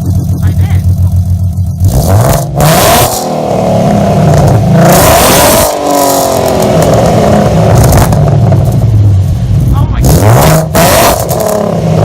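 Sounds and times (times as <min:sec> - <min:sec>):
car engine revving: 0:00.0 - 0:12.0.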